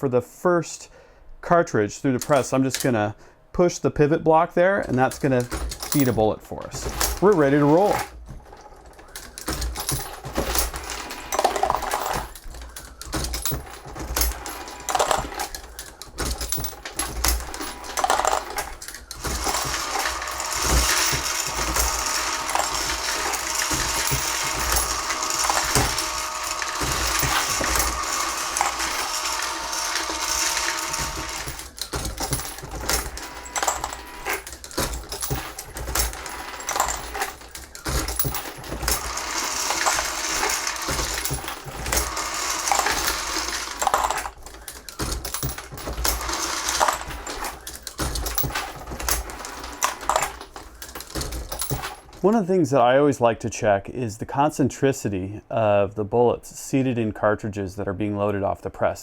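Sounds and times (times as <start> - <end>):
metallic clacks of reloading press: 2.2 - 3.0, 4.8 - 52.3
brass cases clinking: 2.2 - 3.1, 4.8 - 52.4
feeder motor running: 13.4 - 15.6, 16.2 - 52.1.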